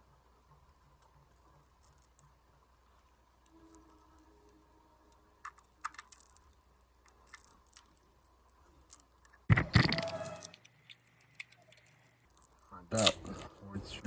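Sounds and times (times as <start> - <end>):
small clicks and scrapes on paper: 0.4 - 13.6
loud scraping tearing sound: 8.8 - 13.6.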